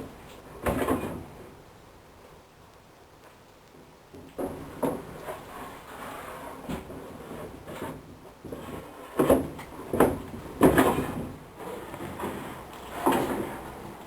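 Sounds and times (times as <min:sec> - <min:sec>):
wood scraping: 0:04.4 - 0:14.0.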